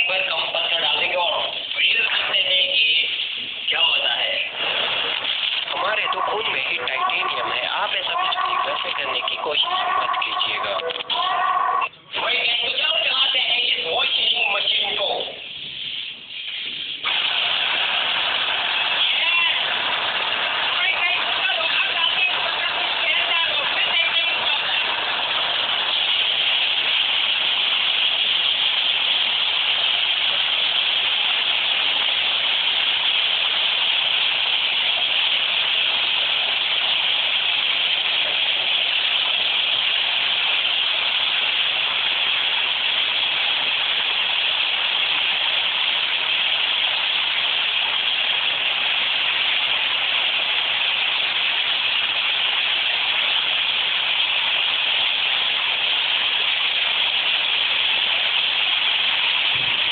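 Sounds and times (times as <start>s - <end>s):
washing machine water churning: 0.0s - 12.6s, 55.0s - 59.9s.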